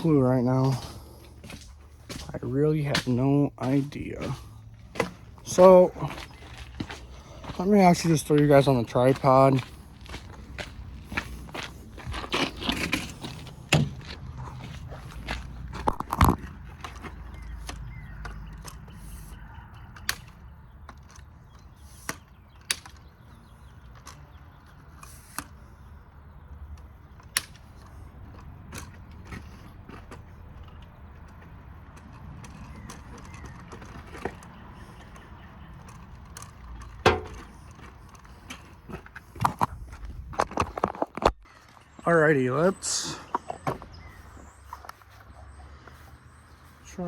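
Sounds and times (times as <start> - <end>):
equipment handling clicks and knocks: 15.7 - 19.1, 19.7 - 25.9, 26.5 - 41.5.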